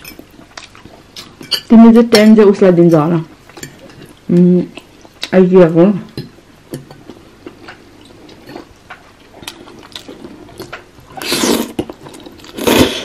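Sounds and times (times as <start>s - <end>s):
slurp of spaghetti: 11.2s - 11.9s.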